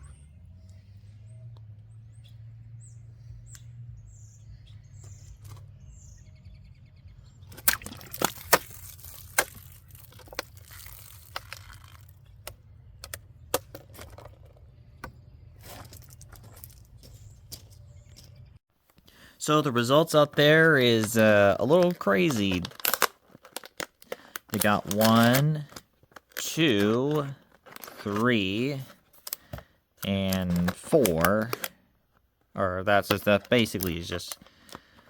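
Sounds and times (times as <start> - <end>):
small birds chirping: 0.0 - 20.4.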